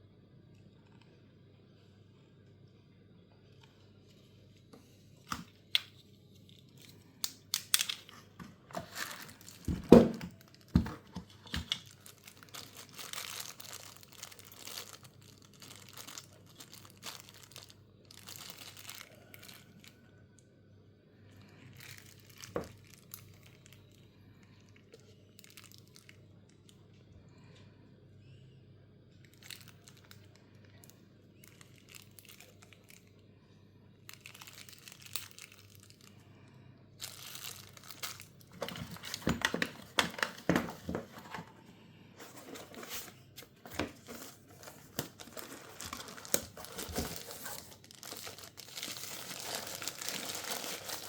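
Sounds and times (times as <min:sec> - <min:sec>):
crinkling and tearing: 0:05.3 - 0:20.0, 0:24.9 - 0:26.1, 0:29.3 - 0:33.1, 0:34.1 - 0:36.1, 0:37.0 - 0:41.6, 0:42.2 - 0:51.0.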